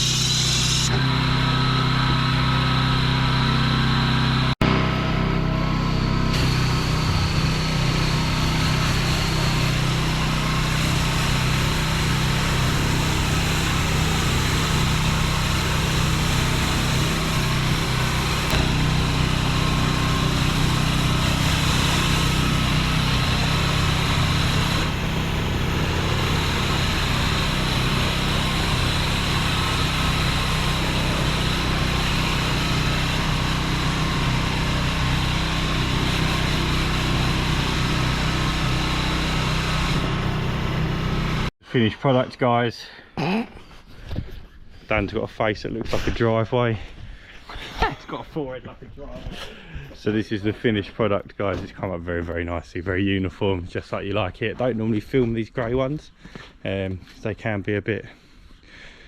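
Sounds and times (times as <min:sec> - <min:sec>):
high-pressure water jet hissing: 0:00.0 - 0:04.5, 0:06.3 - 0:41.5
pressure washer engine hum: 0:00.0 - 0:41.5.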